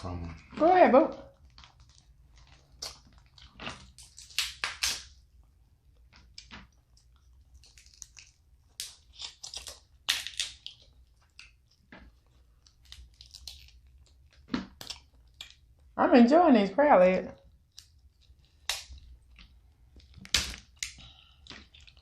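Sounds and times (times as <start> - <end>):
crab shells cracking: 1.4 - 5.2, 6.2 - 11.9, 12.6 - 15.8, 17.6 - 19.2.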